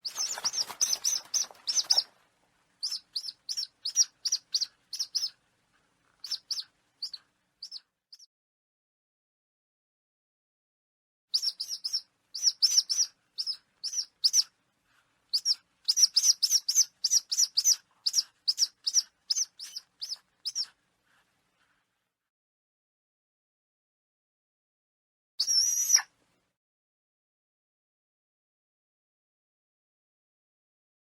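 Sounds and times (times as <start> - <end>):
bird of prey calling: 0.0 - 2.2, 2.8 - 5.4, 6.2 - 7.8, 11.4 - 14.5, 15.3 - 20.7, 25.4 - 26.1.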